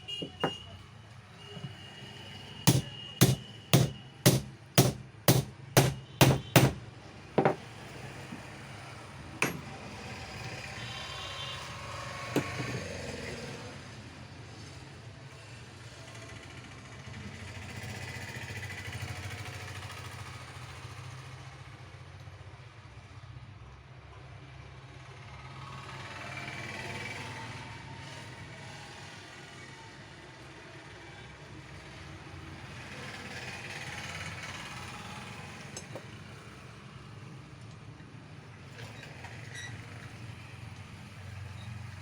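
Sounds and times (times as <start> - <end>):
hammer strikes: 2.7 - 6.8, 7.4 - 7.6, 9.4 - 9.7.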